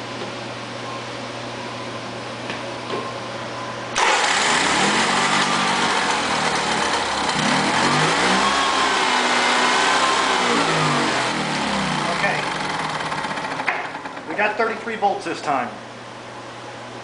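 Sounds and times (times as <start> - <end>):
generator engine running: 4.0 - 15.8.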